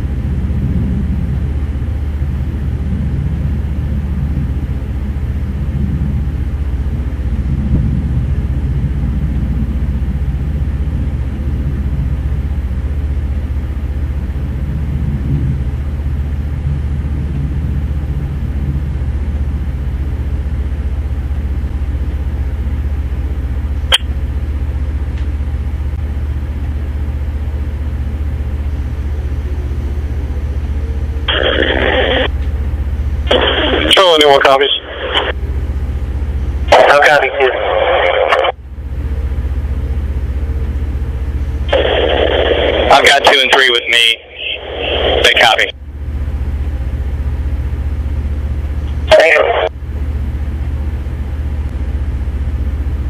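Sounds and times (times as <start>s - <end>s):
low mechanical rumble: 0.0s - 53.0s
sharp click: 23.9s - 24.1s.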